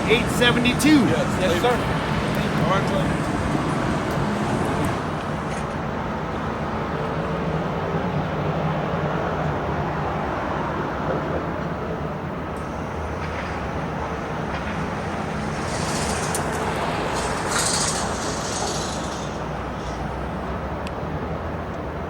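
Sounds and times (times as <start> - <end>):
machinery low hum: 0.0 - 6.5
hiss: 14.4 - 20.4.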